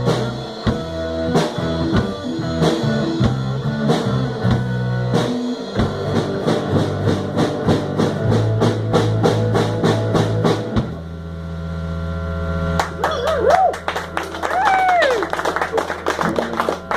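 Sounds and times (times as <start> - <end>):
drum hits: 0.0 - 11.0
live rock band playing: 0.0 - 11.0, 12.8 - 16.9
bass guitar line: 0.0 - 16.9.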